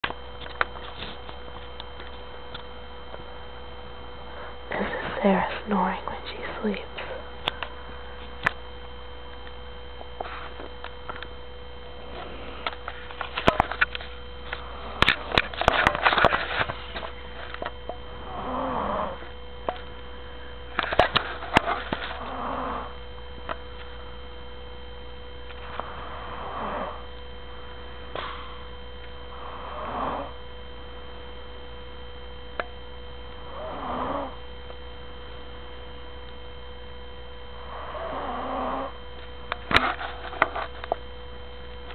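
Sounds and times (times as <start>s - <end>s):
steady electrical hum: 0.0s - 41.9s
woman snoring: 18.1s - 19.3s, 22.1s - 23.0s, 25.6s - 27.1s, 29.3s - 30.4s, 33.5s - 34.4s, 37.6s - 39.0s.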